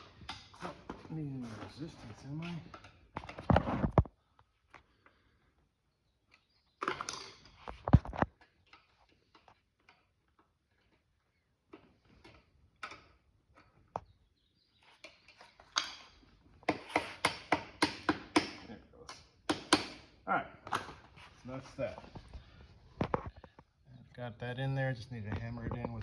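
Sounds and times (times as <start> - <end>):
plastic parts clicking and knocking: 6.3 - 10.9.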